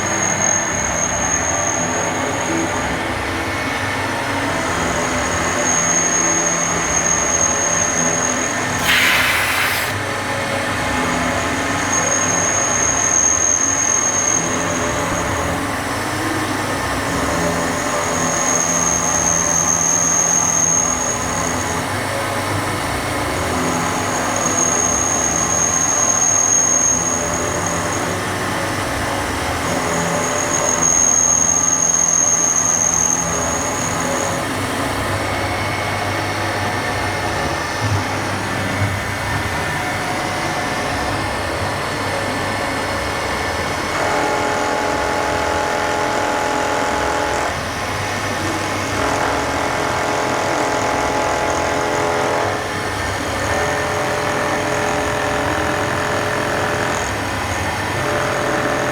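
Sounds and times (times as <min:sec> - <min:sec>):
milling machine running: 0:08.7 - 0:10.0, 0:48.7 - 0:58.9
high thin whine: 0:08.8 - 0:10.0.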